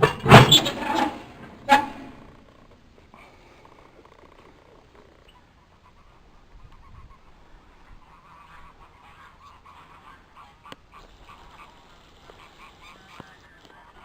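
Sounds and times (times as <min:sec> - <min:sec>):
poultry flock calling: 0:05.3 - 0:14.0.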